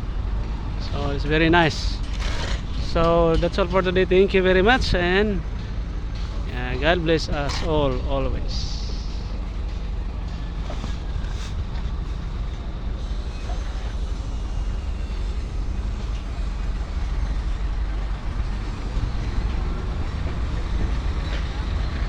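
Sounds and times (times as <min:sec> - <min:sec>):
truck engines rumbling: 0:00.0 - 0:22.0.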